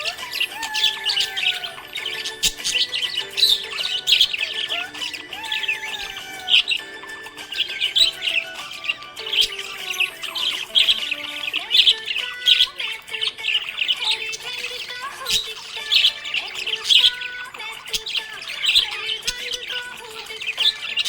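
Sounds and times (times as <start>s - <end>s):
budgie chirping and warbling: 0.0s - 21.0s.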